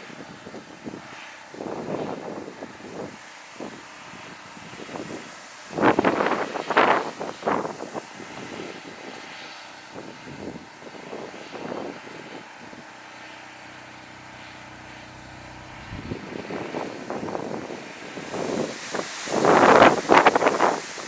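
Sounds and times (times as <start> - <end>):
engine drone: 0.0 - 21.0
wind gusting on microphone: 1.6 - 9.3, 15.1 - 21.0.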